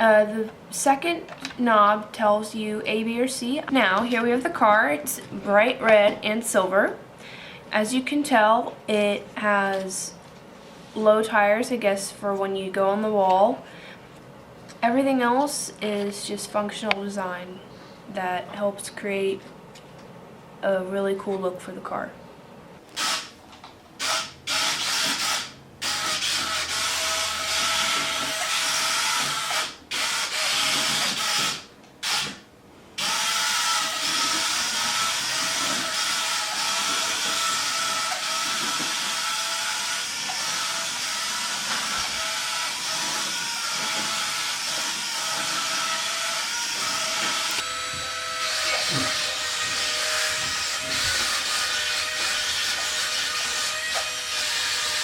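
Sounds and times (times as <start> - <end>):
suction fan hissing and whining: 24.0 - 55.0.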